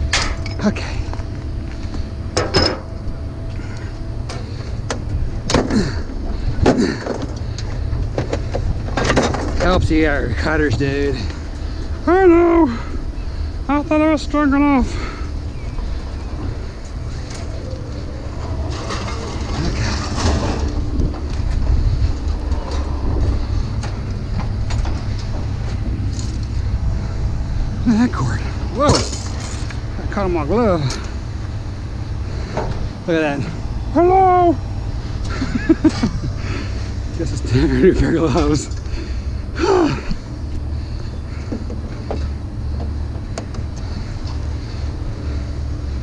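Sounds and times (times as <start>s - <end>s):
low rumble: 0.0s - 46.0s.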